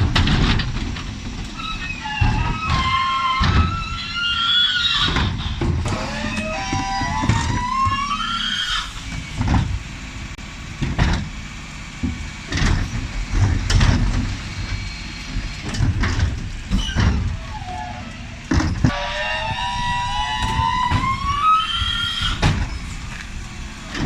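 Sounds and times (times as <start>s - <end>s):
low engine rumble: 5.2s - 24.0s
hydraulic whine rising: 5.8s - 10.4s, 16.3s - 23.7s
bins banging against lifter: 15.7s - 19.2s.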